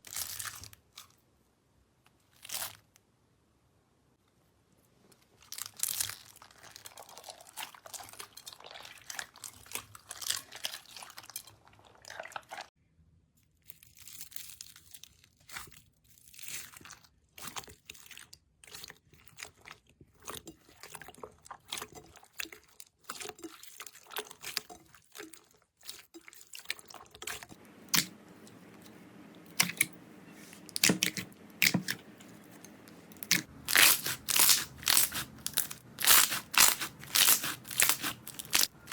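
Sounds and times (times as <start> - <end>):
slime crunching and crackling: 5.4 - 12.7, 23.3 - 38.9.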